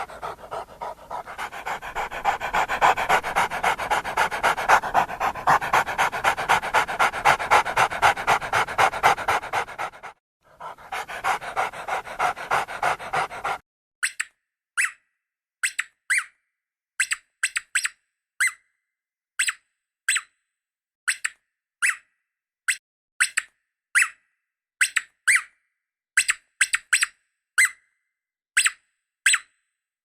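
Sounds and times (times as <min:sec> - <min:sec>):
dog panting: 0:00.0 - 0:13.6.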